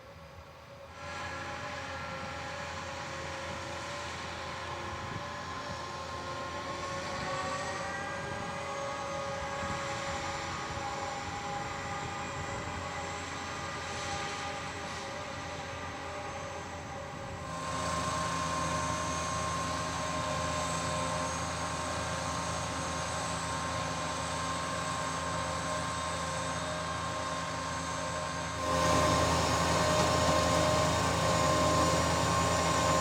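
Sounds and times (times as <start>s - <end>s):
diesel engine droning under load: 0.8s - 33.0s
whining tones: 28.4s - 33.0s.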